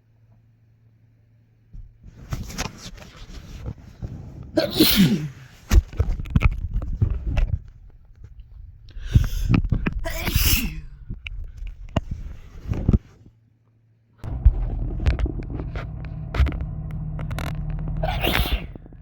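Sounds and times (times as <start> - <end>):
person sneezing: 4.6 - 5.5, 10.0 - 10.9.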